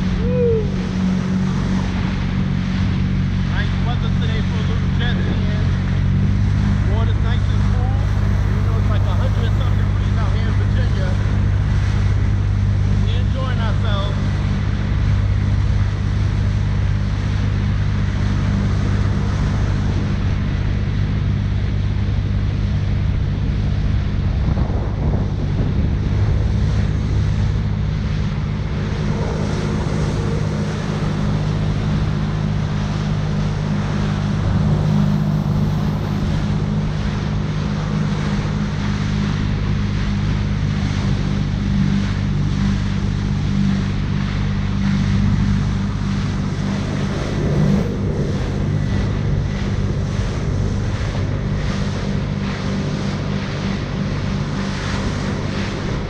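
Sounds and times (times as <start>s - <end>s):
jet ski engine drone: 0.0s - 56.0s
water and wind rushing: 0.0s - 56.0s.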